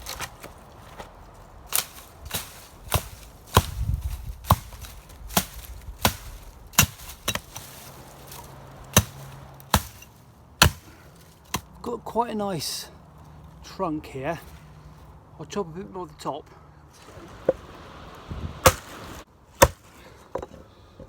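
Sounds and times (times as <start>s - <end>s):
axe chopping branches: 0.0s - 11.8s, 18.6s - 20.0s.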